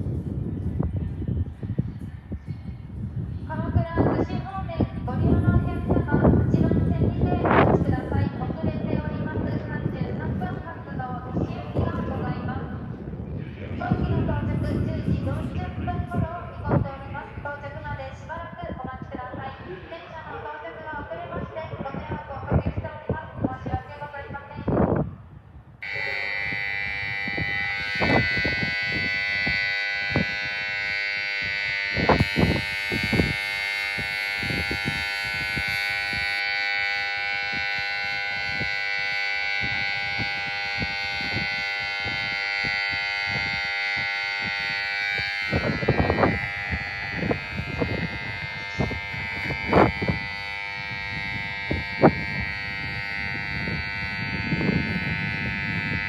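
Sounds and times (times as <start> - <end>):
electric alarm buzzer: 25.8 - 56.0.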